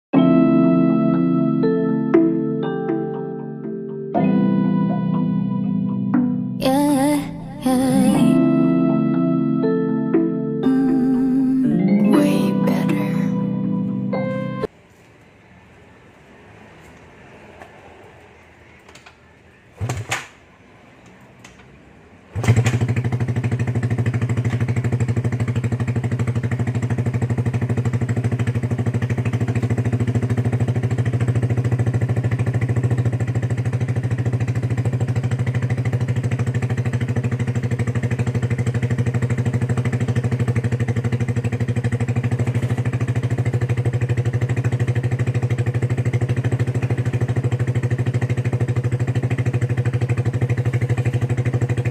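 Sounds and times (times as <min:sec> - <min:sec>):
motorcycle engine starting and idling: 0:18.6 - 0:51.9.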